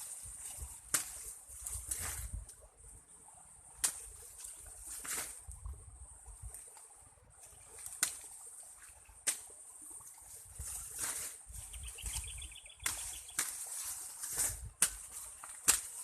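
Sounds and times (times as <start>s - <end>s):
wind rumble on microphone: 0.2s - 3.0s, 5.4s - 7.3s, 10.3s - 13.2s
corn ears snapping off stalks: 0.9s - 2.3s, 3.8s - 4.1s, 4.9s - 5.4s, 7.9s - 8.2s, 12.8s - 16.0s
bird trill: 11.7s - 13.4s
dry leaves rustling: 12.9s - 16.0s.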